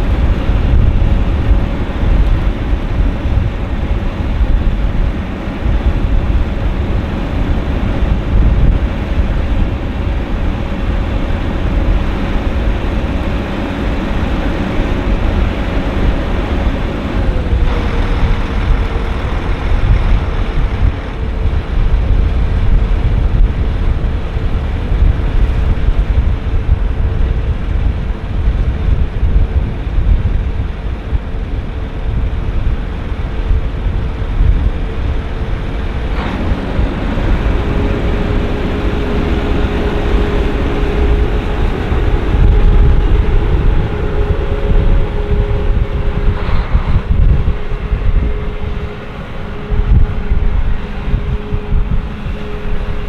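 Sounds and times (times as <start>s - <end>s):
combine harvester hum: 0.0s - 53.0s
wind rumble on microphone: 0.0s - 53.0s.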